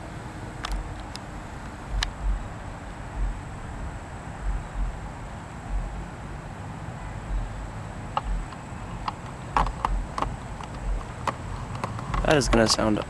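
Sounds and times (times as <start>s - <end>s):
faint high whine: 0.0s - 13.0s
steady hiss: 0.0s - 13.0s
wind gusts on microphone: 0.0s - 13.0s
faint clicks: 0.5s - 3.4s, 7.0s - 13.0s.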